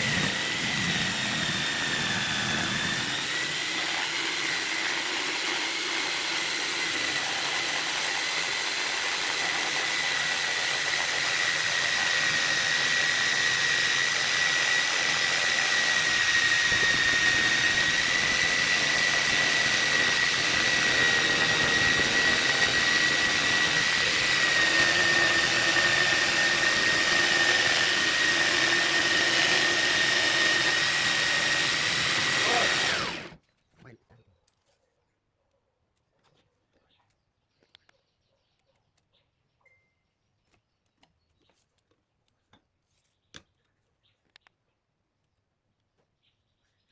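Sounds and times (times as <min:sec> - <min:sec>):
power tool motor whining: 0:00.0 - 0:33.4.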